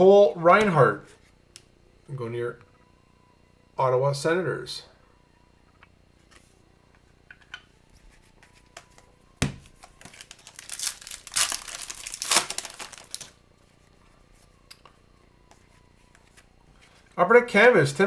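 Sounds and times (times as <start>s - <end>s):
plastic wrapper tearing and crinkling: 9.8s - 13.4s.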